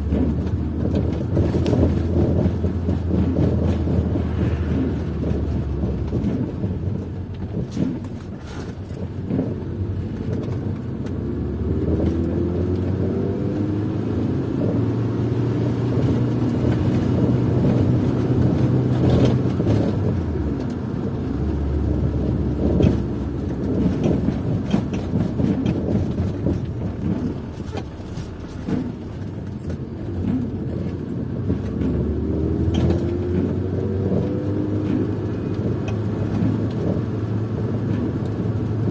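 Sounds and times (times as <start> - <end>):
car engine accelerating: 0.0 - 38.9
road noise: 0.0 - 38.9.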